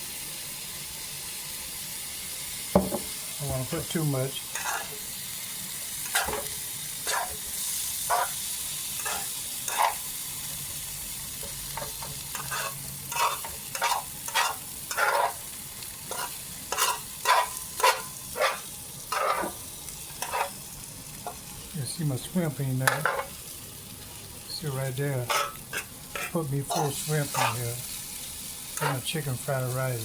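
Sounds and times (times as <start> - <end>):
food sizzling in a skillet: 0.0 - 30.0
utensil scraping a pan: 4.5 - 5.0, 6.0 - 8.4, 9.0 - 10.1, 11.4 - 15.5, 16.1 - 20.6, 22.8 - 23.4, 25.1 - 28.0, 28.7 - 29.3.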